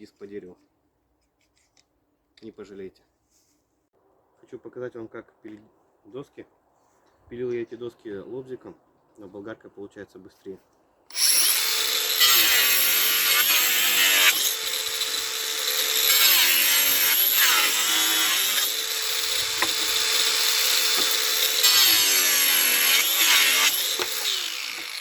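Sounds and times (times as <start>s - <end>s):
angle grinder cutting wood: 11.1s - 25.0s.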